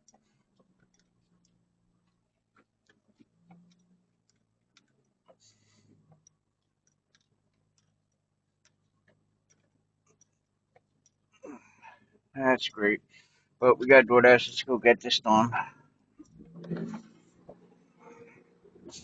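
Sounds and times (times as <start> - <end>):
faint clicks: 0.0 - 12.0.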